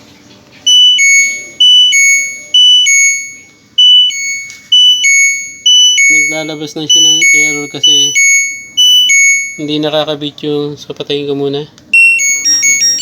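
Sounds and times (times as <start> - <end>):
two-note error beep: 12.0 - 13.0.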